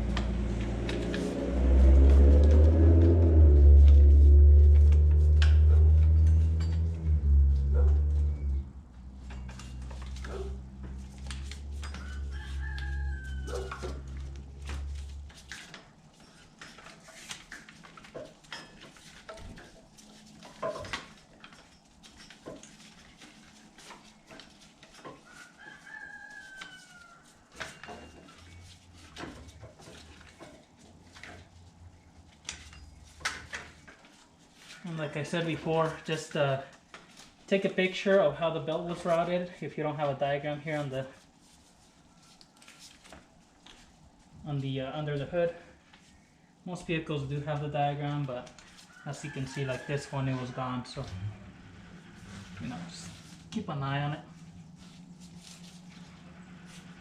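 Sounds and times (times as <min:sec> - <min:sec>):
loud low steady rumble: 0:00.0 - 0:12.2, 0:51.0 - 0:57.0
rooster crowing: 0:11.6 - 0:14.9, 0:25.2 - 0:28.6, 0:48.8 - 0:53.4.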